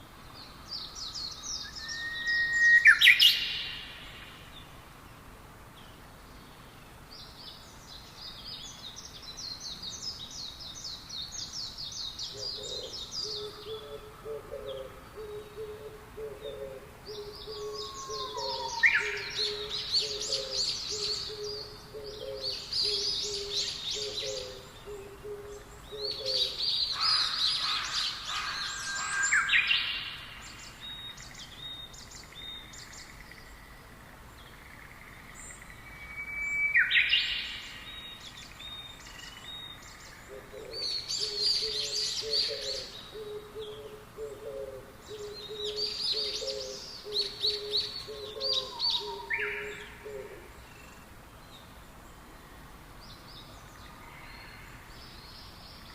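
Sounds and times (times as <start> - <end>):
wild birds chirping and singing: 0.0 - 55.9
low repeating bird call: 12.3 - 29.9.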